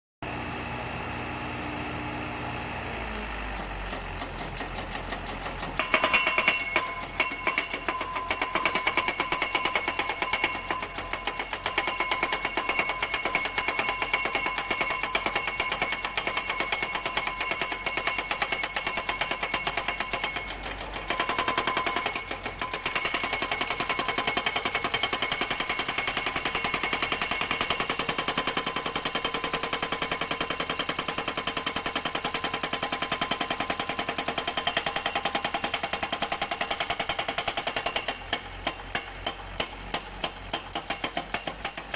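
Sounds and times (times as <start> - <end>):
pile driver hammering: 3.9 - 41.9.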